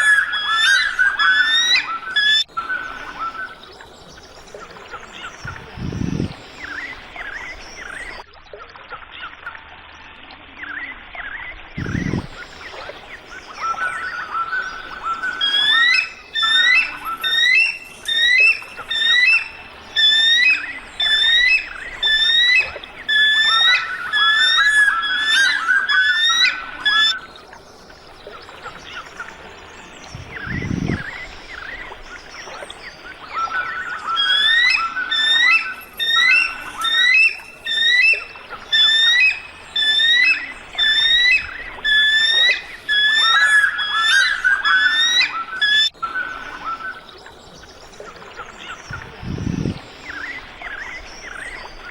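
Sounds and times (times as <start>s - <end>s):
eagle calling: 0.0s - 3.6s, 5.0s - 8.2s, 11.8s - 27.3s, 30.1s - 32.2s, 33.2s - 47.0s, 48.6s - 51.8s.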